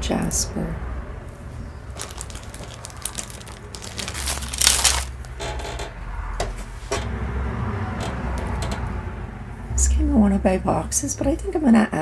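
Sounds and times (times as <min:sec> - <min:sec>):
plastic packets crinkling: 0:01.9 - 0:05.4.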